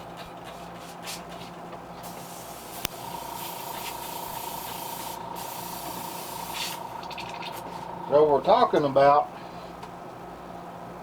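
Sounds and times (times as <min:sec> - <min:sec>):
airbrush spraying paint: 0:02.0 - 0:06.9.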